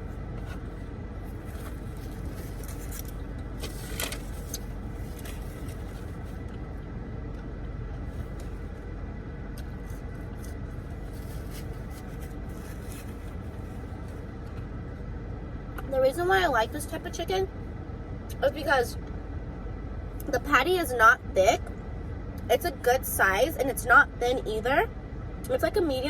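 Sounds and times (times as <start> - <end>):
car air conditioning hum: 0.0 - 26.0.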